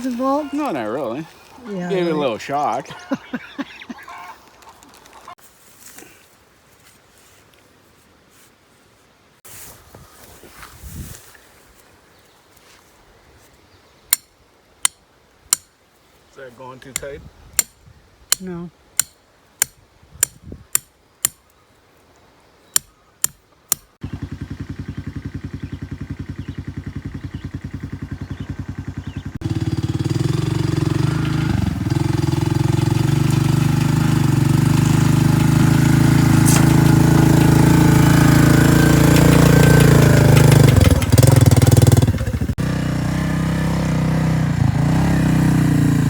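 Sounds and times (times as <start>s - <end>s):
small engine running: 24.0s - 46.0s.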